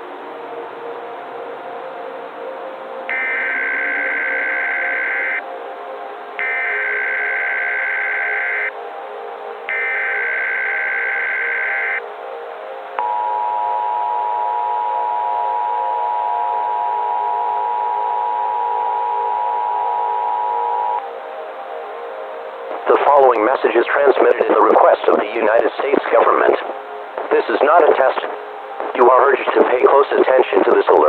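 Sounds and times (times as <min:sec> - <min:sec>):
static: 0:03.1 - 0:05.4, 0:06.4 - 0:08.8, 0:09.7 - 0:12.0, 0:22.7 - 0:31.0
two-tone attention signal: 0:03.1 - 0:05.4, 0:06.4 - 0:08.7, 0:09.7 - 0:12.0.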